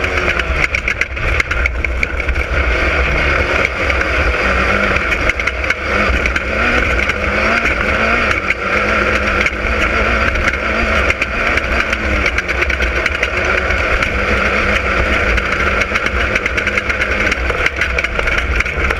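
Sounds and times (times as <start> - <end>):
knocks and rattles: 0.0 - 18.9
race car engine running hard: 0.0 - 18.9.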